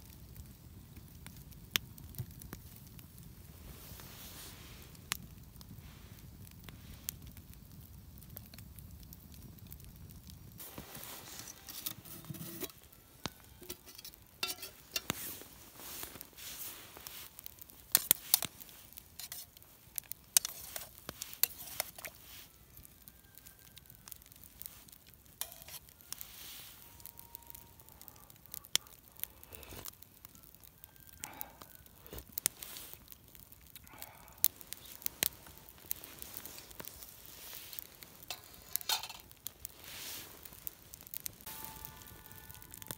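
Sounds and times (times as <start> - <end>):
food sizzling in a pan: 10.6 - 23.7, 24.5 - 27.5, 32.0 - 33.0, 34.7 - 42.9.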